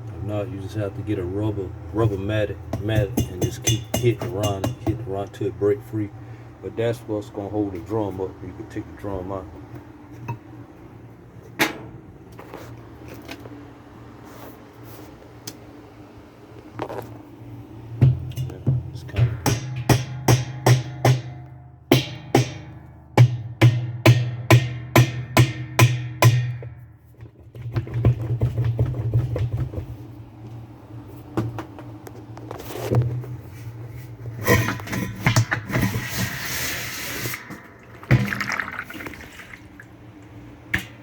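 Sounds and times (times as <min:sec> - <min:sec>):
hammer blows on metal tub: 0:02.1 - 0:05.3, 0:18.0 - 0:26.9.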